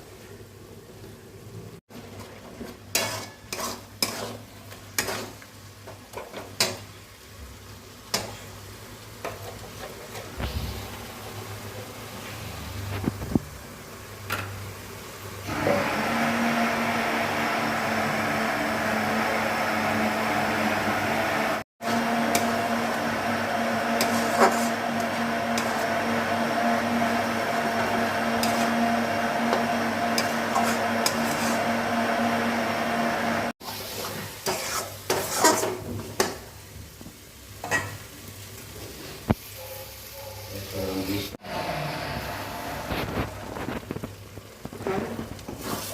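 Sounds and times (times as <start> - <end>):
chicken sizzling in a pan: 1.4 - 15.5, 21.8 - 31.9, 33.6 - 41.5, 42.2 - 45.9.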